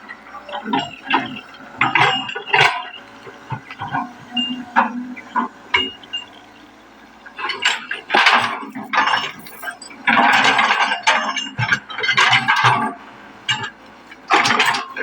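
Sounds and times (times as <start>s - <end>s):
metal clanks and knocks: 7.5s - 13.7s.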